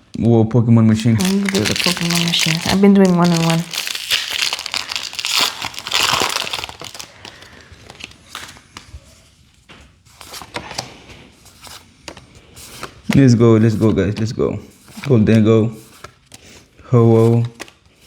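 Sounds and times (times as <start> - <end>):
foil wrapper crinkling: 1.0 - 8.6
cards being handled: 1.0 - 18.0.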